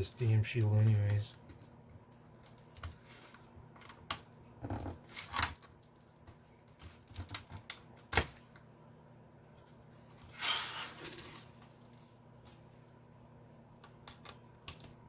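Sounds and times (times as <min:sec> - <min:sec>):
short metal scrapes: 0:10.3 - 0:11.4.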